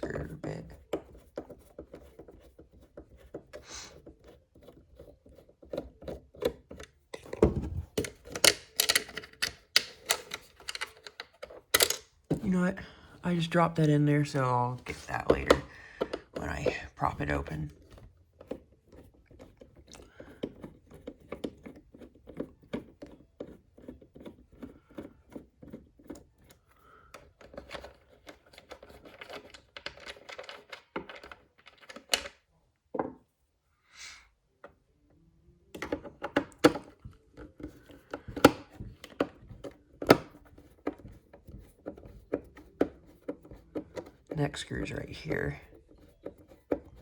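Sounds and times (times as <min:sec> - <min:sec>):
screwdriver clicking on screws: 0:05.3 - 0:12.1.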